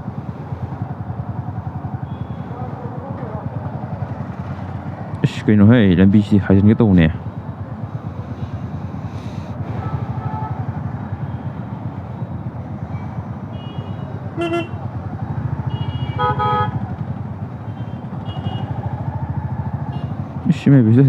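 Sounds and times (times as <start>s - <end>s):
motorcycle engine running: 0.0s - 5.6s, 6.7s - 20.5s
vehicle horns honking: 2.0s - 2.6s, 9.7s - 11.6s, 12.9s - 15.0s, 15.6s - 18.9s, 19.8s - 20.2s.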